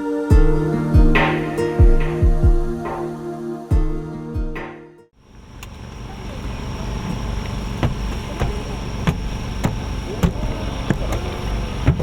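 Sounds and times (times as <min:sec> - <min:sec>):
crowd chatter: 0:08.0 - 0:12.0.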